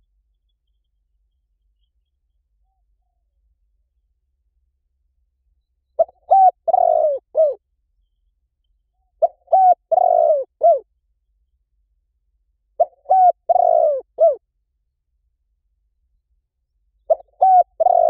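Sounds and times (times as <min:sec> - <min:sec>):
dove cooing: 0:06.0 - 0:07.6, 0:09.2 - 0:10.9, 0:12.8 - 0:14.4, 0:17.1 - 0:18.0.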